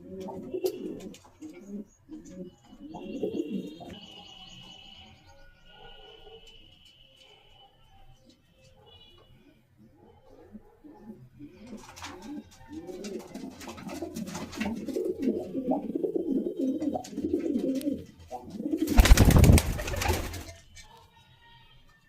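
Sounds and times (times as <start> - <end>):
pigeons cooing: 0.0 - 4.7, 10.0 - 20.4.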